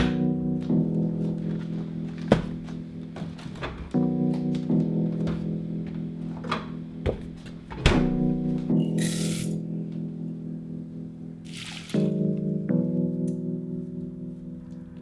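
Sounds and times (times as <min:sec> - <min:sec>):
short hiss: 0:09.0 - 0:09.6.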